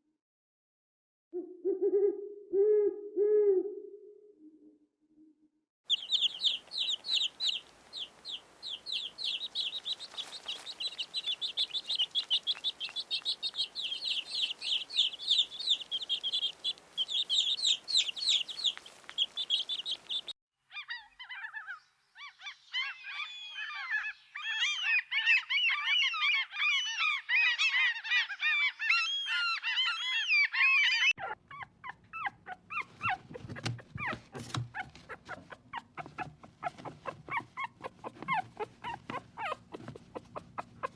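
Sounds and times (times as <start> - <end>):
fast high animal calls: 5.9 - 21.8, 22.8 - 40.9
flock of birds calling: 5.9 - 31.1.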